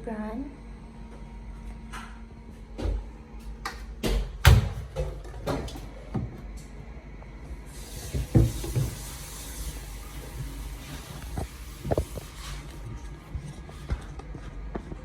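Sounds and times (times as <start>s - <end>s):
washing machine clicks and knocks: 4.0s - 5.8s.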